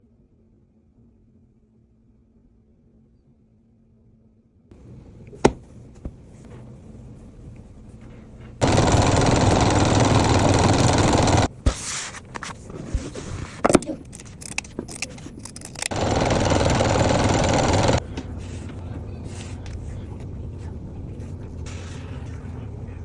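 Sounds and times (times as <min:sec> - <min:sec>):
electric sewing machine running: 0:08.6 - 0:11.5, 0:15.9 - 0:18.0.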